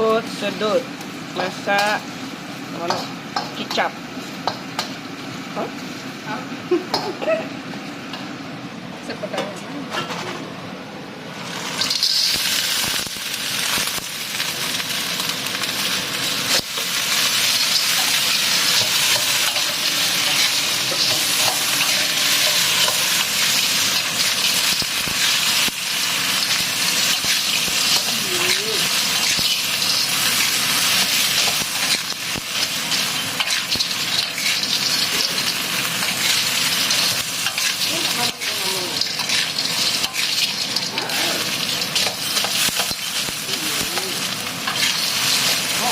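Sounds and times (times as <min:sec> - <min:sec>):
food sizzling in hot oil: 0:00.0 - 0:08.5, 0:11.3 - 0:45.9.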